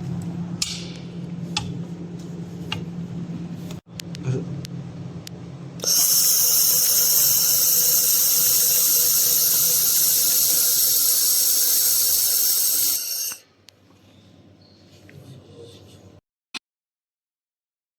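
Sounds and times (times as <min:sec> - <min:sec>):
laser welding machine whining: 0:05.8 - 0:13.4.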